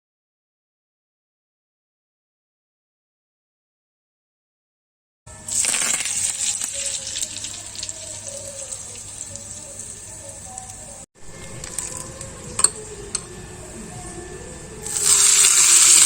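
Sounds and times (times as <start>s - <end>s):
oil sizzling in a pan: 5.4s - 11.0s, 14.8s - 16.0s.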